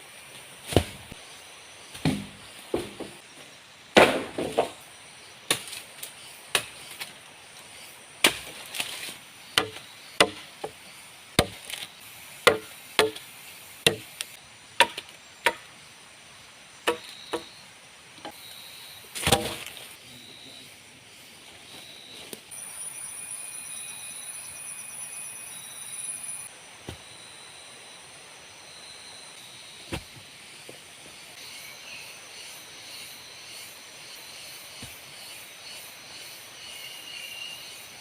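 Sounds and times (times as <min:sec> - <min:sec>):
wood being chopped: 0:02.0 - 0:03.1, 0:04.0 - 0:04.8, 0:06.5 - 0:07.1, 0:09.6 - 0:10.8, 0:11.4 - 0:11.8, 0:12.4 - 0:13.2, 0:13.8 - 0:15.7, 0:16.8 - 0:17.5, 0:19.2 - 0:19.7
faint high insect trill: 0:04.8 - 0:38.0.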